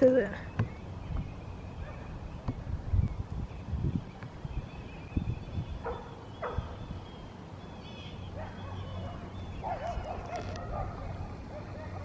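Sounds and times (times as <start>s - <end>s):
dogs barking: 1.8s - 2.2s, 5.8s - 6.8s, 8.4s - 12.0s.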